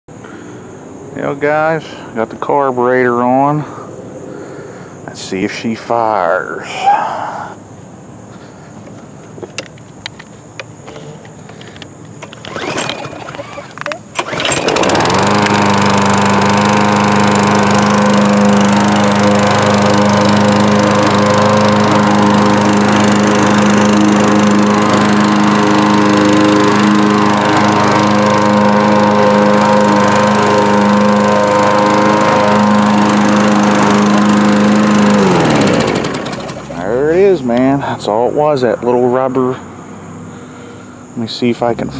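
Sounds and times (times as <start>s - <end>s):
lawn mower engine starting and running: 8.4s - 38.6s.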